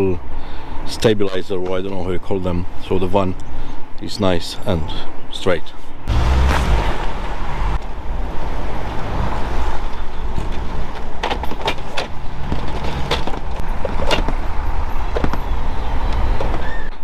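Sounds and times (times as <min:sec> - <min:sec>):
engine rumbling: 0:06.1 - 0:13.9.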